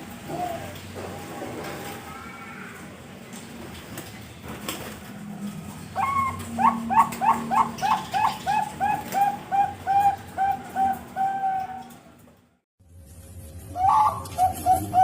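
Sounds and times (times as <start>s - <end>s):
dove cooing: 0.0s - 2.8s, 5.7s - 12.2s, 13.8s - 15.0s.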